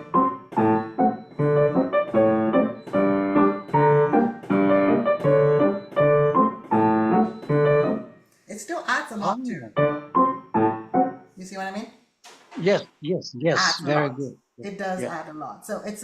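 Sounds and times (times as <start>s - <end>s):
piano march accompaniment: 0.0s - 8.2s, 9.7s - 11.4s.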